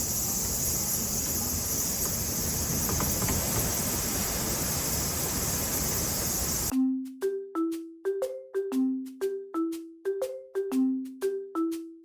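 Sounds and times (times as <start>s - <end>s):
insect chorus: 0.0s - 6.7s.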